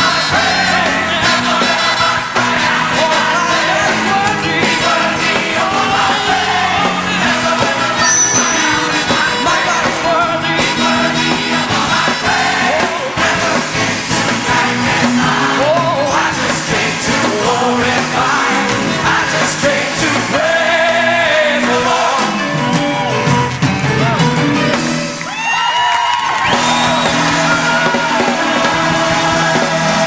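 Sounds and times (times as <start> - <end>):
voices singing: 0.0 - 22.7, 26.5 - 30.0
gospel band playing: 0.0 - 30.0
high sliding notes: 8.0 - 9.9.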